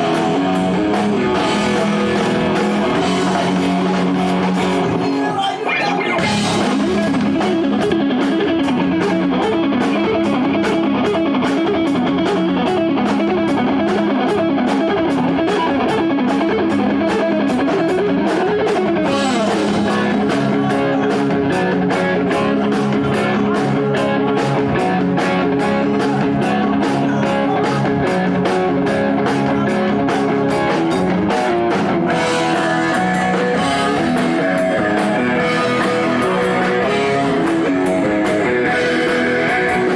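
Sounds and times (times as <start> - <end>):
drum kit beat: 0.0 - 39.9
electric guitars: 0.0 - 39.9.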